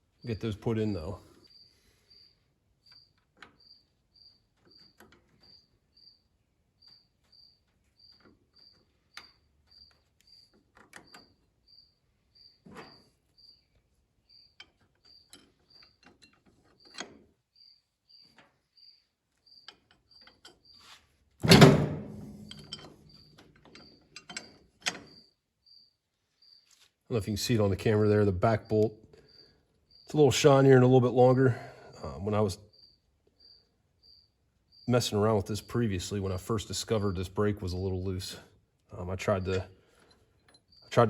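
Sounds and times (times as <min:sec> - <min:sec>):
cricket chirping: 0:01.2 - 0:16.0, 0:17.6 - 0:20.8, 0:25.1 - 0:26.8, 0:28.4 - 0:30.1, 0:31.9 - 0:35.2
loud metal clank: 0:21.4 - 0:22.8.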